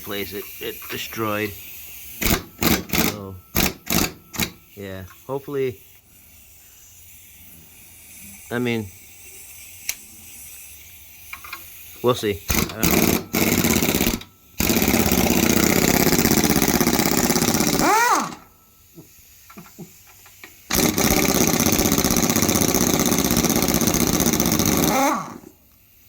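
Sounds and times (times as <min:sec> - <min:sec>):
impact wrench hammering on bolts: 0:02.2 - 0:04.7, 0:12.5 - 0:18.5, 0:19.5 - 0:25.5.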